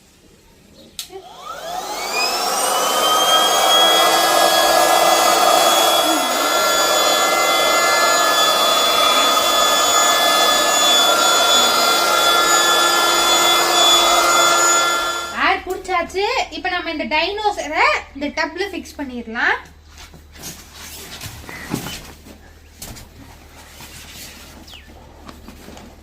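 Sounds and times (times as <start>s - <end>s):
electric air pump whining: 1.0s - 15.9s.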